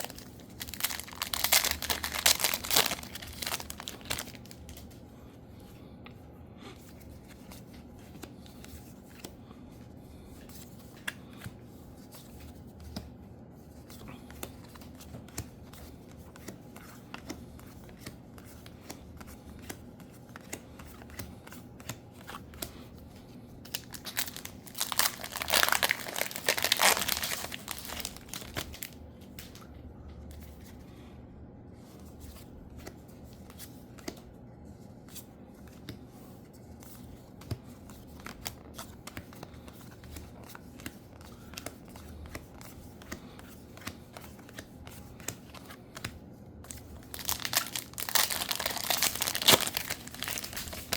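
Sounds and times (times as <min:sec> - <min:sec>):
wrapper tearing and crinkling: 0:00.0 - 0:04.6, 0:23.7 - 0:29.0, 0:47.1 - 0:50.9.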